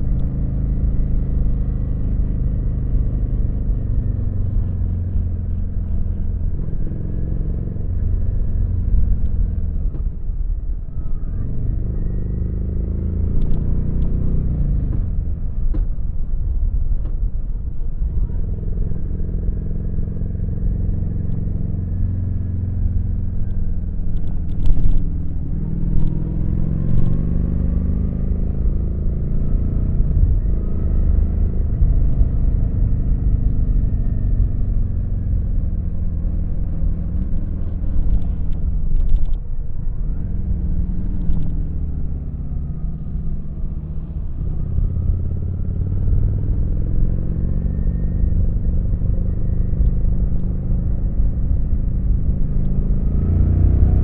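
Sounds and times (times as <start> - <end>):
motorcycle engine running: 17.8 - 54.0.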